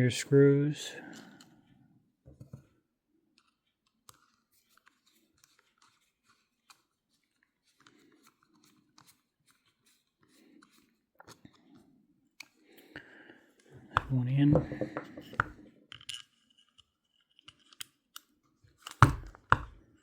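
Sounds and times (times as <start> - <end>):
soft handling rustles: 0.9 - 12.6.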